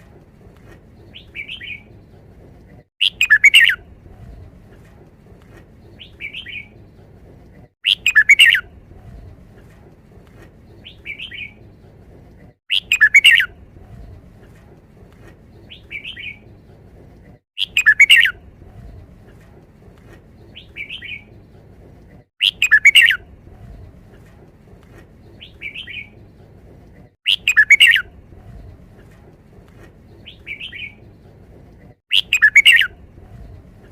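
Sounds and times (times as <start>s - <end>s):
bird singing loud phrase: 22.4s - 23.2s.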